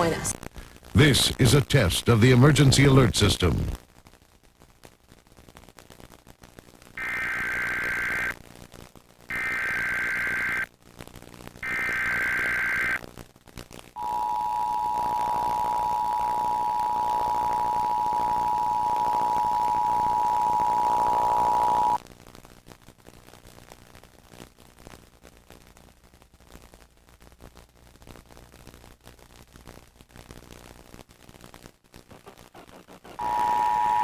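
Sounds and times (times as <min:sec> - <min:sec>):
screeching digital data bursts: 0:07.0 - 0:08.3, 0:09.3 - 0:10.6, 0:11.6 - 0:13.0, 0:14.0 - 0:22.0, 0:33.2 - 0:34.0
harsh two-tone attention signal: 0:14.0 - 0:22.0, 0:33.2 - 0:34.0.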